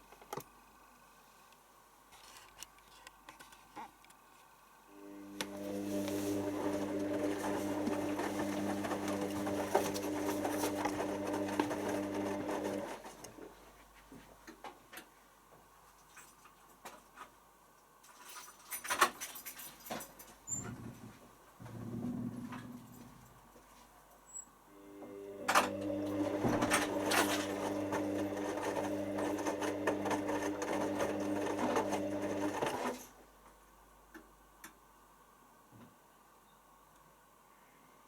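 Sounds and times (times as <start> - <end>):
water rushing into washing machine: 5.0 - 13.2, 25.1 - 33.0.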